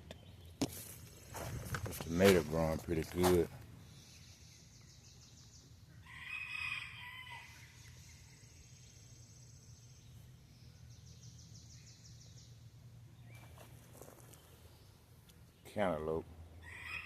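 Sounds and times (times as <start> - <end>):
distant rooster crowing: 6.0 - 7.6, 16.6 - 17.0.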